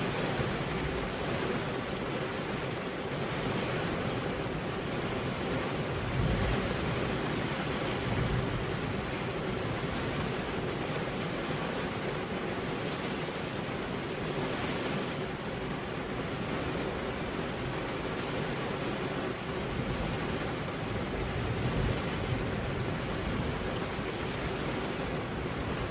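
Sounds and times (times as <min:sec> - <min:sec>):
heavy rain on a road: 0:00.0 - 0:25.9.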